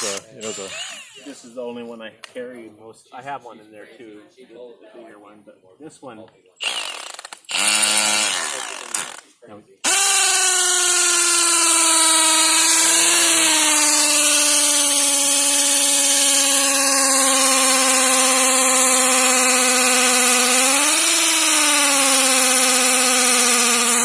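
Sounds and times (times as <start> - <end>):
power drill boring into rock: 0.0 - 1.4, 6.6 - 24.0.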